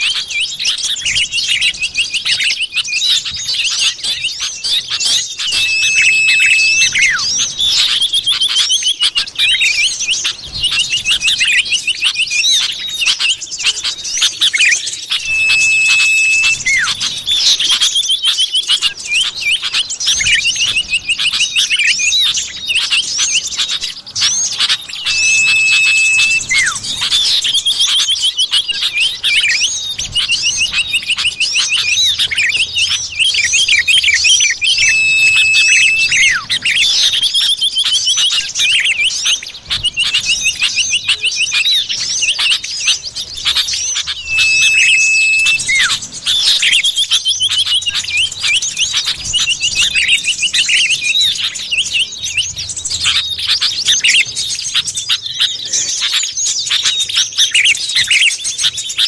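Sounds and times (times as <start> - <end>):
held steady bird whistle: 0.0 - 54.9
bird chirping and slurred notes: 5.4 - 8.0, 14.6 - 17.8, 24.7 - 37.2, 43.3 - 46.0.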